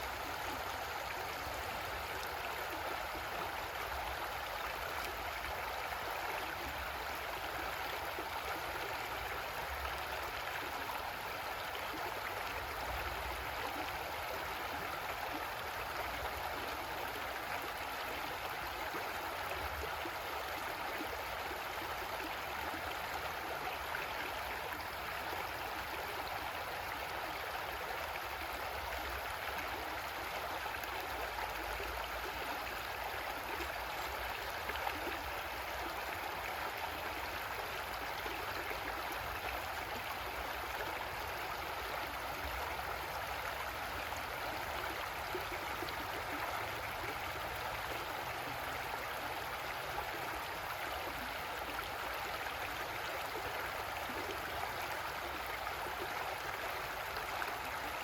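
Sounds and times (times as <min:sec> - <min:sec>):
creek water flowing over rocks: 0:00.0 - 0:58.0.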